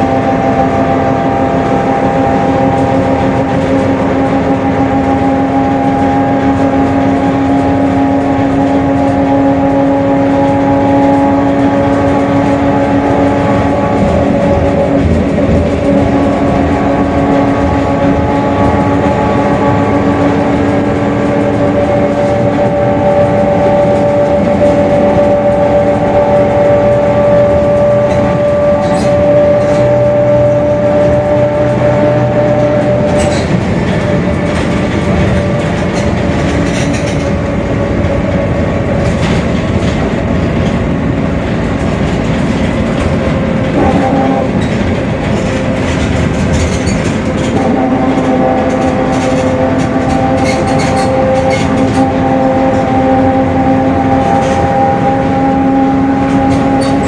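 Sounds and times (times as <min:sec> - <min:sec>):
diesel bus engine running: 0:00.0 - 0:57.0
rattles: 0:11.1 - 0:55.3.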